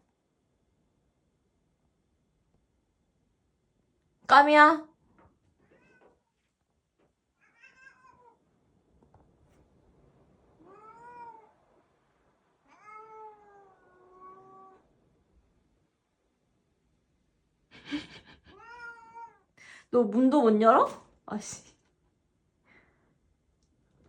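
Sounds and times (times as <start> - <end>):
cat meowing faintly: 5.6 - 6.4, 7.4 - 8.4, 10.6 - 11.8, 12.6 - 14.9, 18.4 - 19.6.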